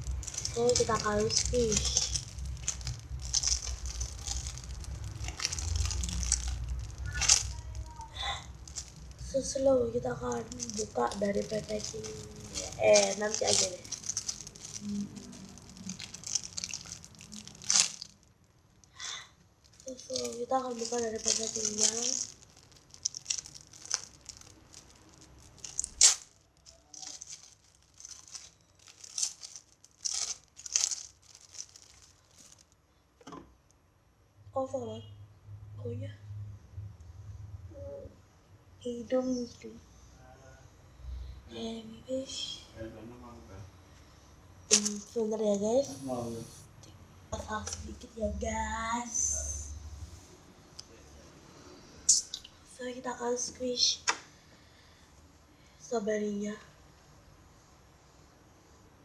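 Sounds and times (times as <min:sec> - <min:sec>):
squishy toy rustling and crinkling: 0:00.0 - 0:32.8, 0:44.6 - 0:46.4, 0:47.4 - 0:48.2.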